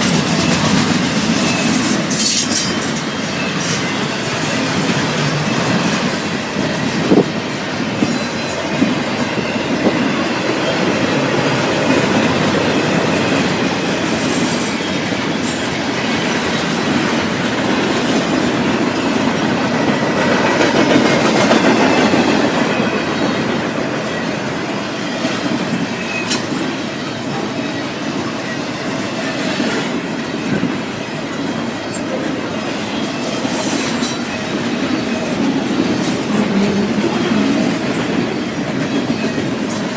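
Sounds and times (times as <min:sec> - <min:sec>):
train wheels on rails: 0:00.0 - 0:39.9
high-pitched wheel squeals: 0:01.1 - 0:06.3, 0:08.0 - 0:11.3.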